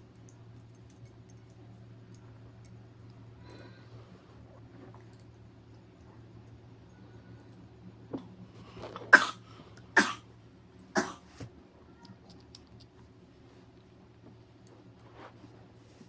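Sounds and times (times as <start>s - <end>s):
baby coughing: 9.1s - 9.4s, 10.0s - 10.2s, 11.0s - 11.2s.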